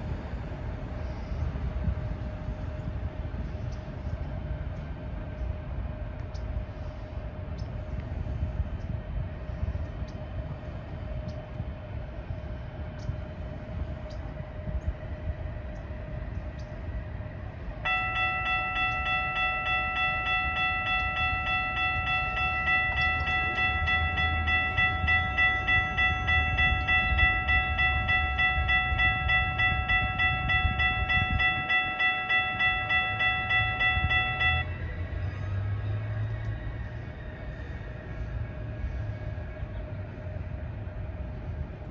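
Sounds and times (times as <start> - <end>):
railroad crossing bell ringing: 15.7 - 41.9.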